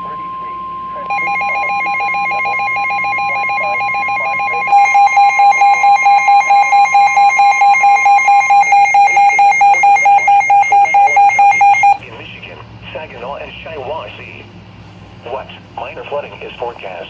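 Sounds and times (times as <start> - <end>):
pulsing electronic alarm beep: 0.0 - 12.0
steady warning alarm tone: 0.0 - 12.0
announcer voice: 0.0 - 14.5.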